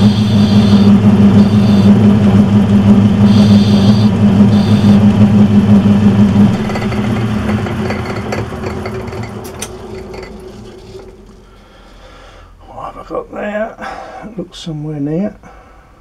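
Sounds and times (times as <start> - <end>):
metal lathe motor humming: 0.0 - 11.6.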